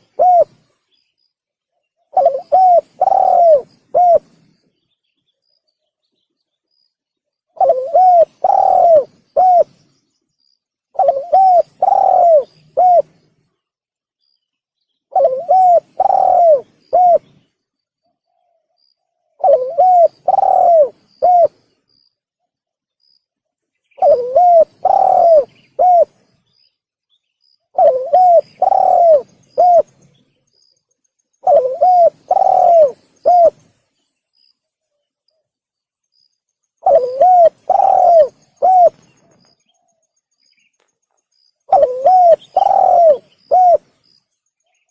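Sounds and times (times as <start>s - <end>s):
dove cooing: 0.0s - 0.7s, 2.1s - 4.4s, 7.5s - 9.8s, 10.9s - 13.2s, 15.1s - 17.4s, 19.4s - 21.7s, 24.0s - 26.3s, 27.7s - 30.0s, 31.4s - 33.7s, 36.8s - 39.5s, 41.7s - 44.0s.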